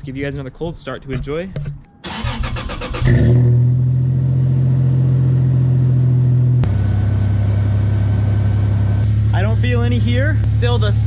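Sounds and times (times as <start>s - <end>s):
engine fast idle: 2.1s - 3.1s
starter motor cranking: 2.1s - 3.1s.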